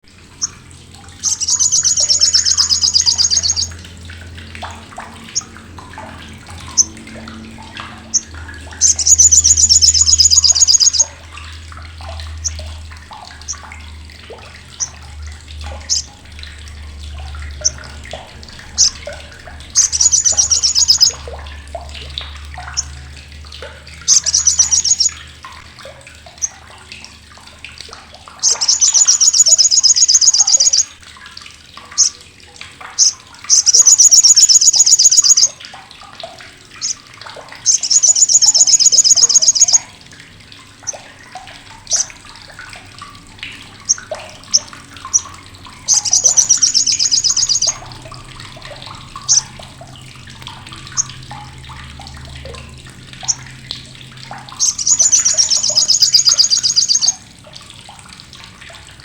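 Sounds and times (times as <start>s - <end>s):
bird rattling trills: 1.2s - 3.9s, 7.6s - 11.2s, 15.8s - 16.1s, 19.7s - 21.3s, 24.0s - 25.2s, 28.4s - 31.0s, 33.0s - 35.6s, 37.6s - 39.8s, 43.9s - 47.9s, 49.2s - 49.5s, 54.5s - 57.2s.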